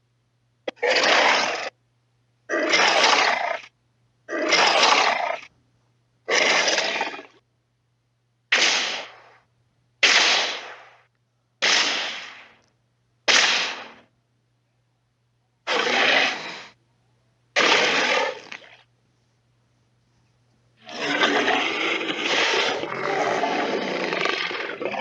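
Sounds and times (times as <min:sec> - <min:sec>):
harsh dinosaur roars: 0:15.7 - 0:16.7, 0:20.8 - 0:25.0.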